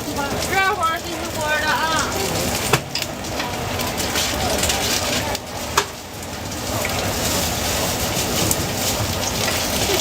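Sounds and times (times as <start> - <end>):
food sizzling: 0.0 - 10.0.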